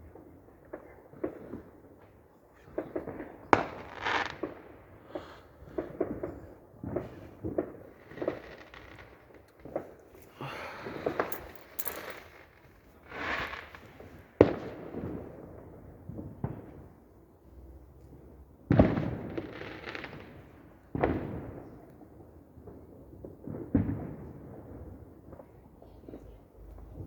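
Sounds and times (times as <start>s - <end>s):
fireworks bangs: 2.6s - 16.8s, 18.7s - 21.8s.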